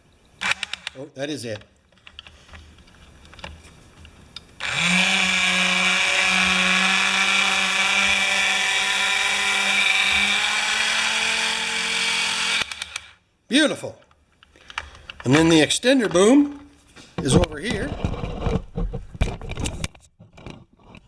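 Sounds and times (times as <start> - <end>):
small electric gear motor whining: 4.6 - 13.2.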